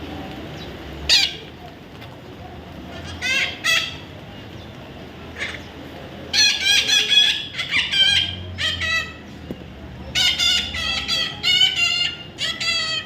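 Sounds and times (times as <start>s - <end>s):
parrot high repeated calls: 6.4s - 9.2s, 10.2s - 13.0s.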